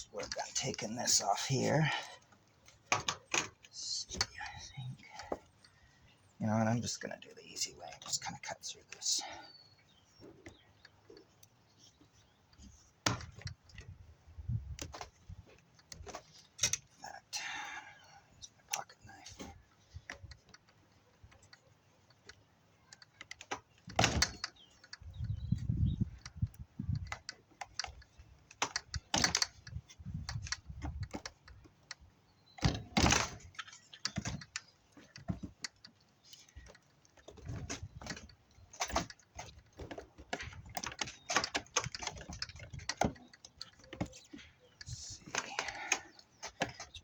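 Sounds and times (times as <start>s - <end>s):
low thumps of parts handled: 12.5s - 16.8s, 19.4s - 32.0s, 32.6s - 47.0s.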